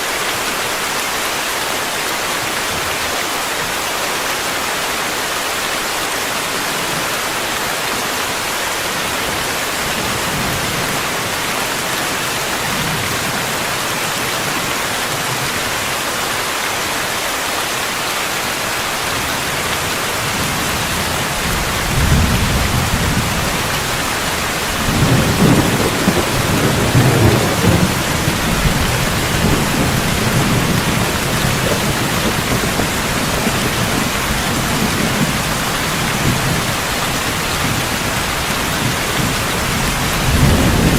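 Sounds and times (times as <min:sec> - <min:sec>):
heavy rain: 0:00.0 - 0:40.9
low rumble of thunder: 0:20.5 - 0:36.8, 0:38.7 - 0:40.9.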